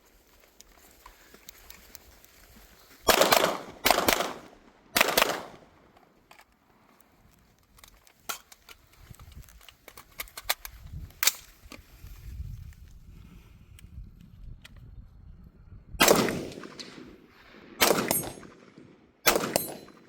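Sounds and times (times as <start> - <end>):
gunshots with echo: 3.1 - 5.6, 16.0 - 20.0.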